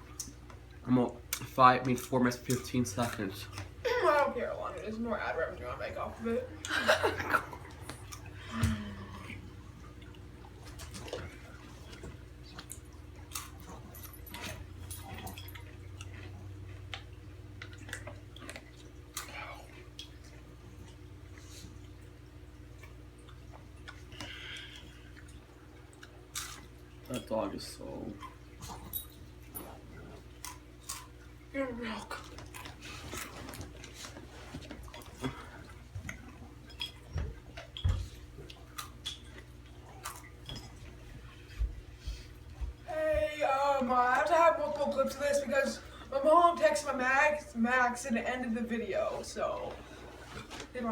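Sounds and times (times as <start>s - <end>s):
steady low hum: 0.0s - 50.9s
person chewing crunchy chips: 12.6s - 14.3s, 25.9s - 26.8s, 29.7s - 31.3s, 37.7s - 40.8s.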